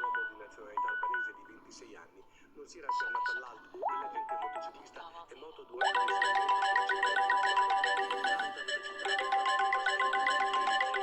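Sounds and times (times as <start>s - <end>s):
electronic ringtone: 0.0s - 1.5s, 2.9s - 4.8s, 5.8s - 11.0s.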